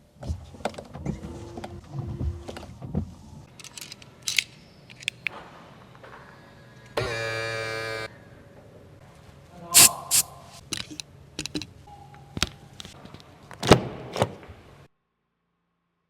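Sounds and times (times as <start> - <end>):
steady buzzing tone: 7.0 - 8.1.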